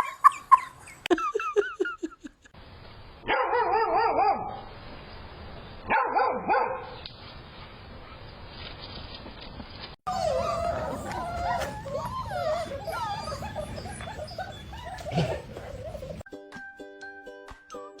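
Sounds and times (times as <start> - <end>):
dog wavering calls: 10.1 - 16.2
dog yipping: 10.1 - 16.2.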